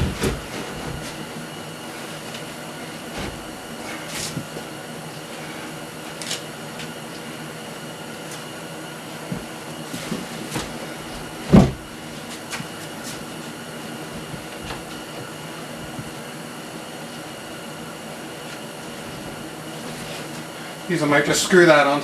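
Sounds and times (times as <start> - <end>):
heavy thump: 0.0 - 1.2, 10.1 - 11.9
room hum: 0.0 - 22.0.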